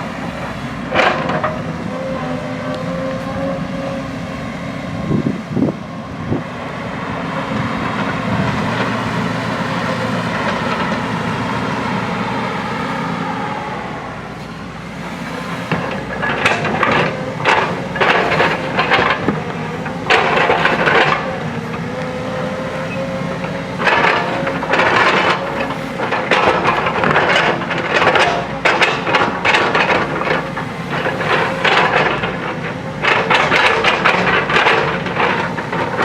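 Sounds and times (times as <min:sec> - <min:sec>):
diesel engine running under load: 0:00.0 - 0:36.0
sharp knocks and clanks: 0:00.9 - 0:02.1, 0:15.2 - 0:21.8, 0:22.8 - 0:36.0.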